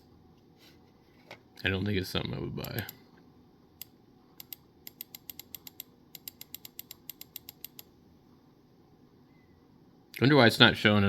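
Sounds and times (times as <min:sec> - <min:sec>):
mouse scroll wheel clicking: 0:03.8 - 0:07.9.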